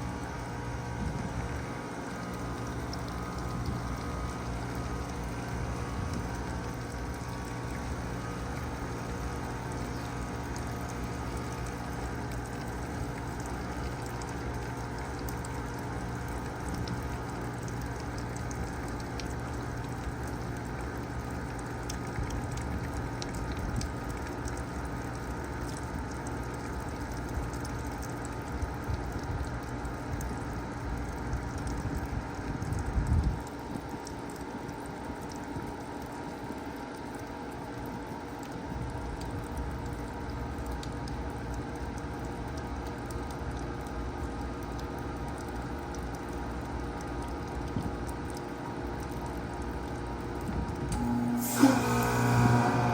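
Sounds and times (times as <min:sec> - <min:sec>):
compressor humming: 0:00.0 - 0:26.2, 0:37.1 - 0:52.9
water pattering and dripping: 0:00.0 - 0:52.9.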